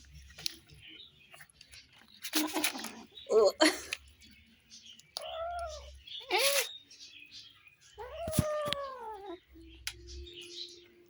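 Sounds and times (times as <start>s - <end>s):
kittens meowing: 5.2s - 6.7s, 8.0s - 9.5s.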